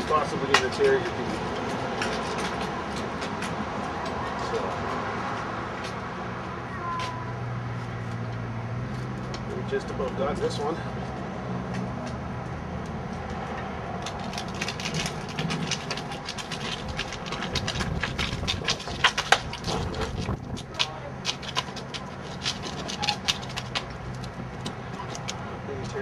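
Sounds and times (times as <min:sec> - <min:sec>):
tire irons clicking on rim: 0:00.0 - 0:06.0, 0:12.8 - 0:26.0.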